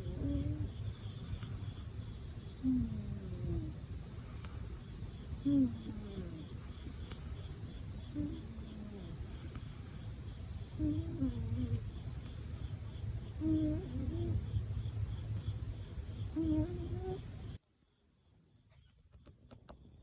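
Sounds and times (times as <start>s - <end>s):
kitten snoring: 0.0s - 1.7s, 2.6s - 3.8s, 5.4s - 7.5s.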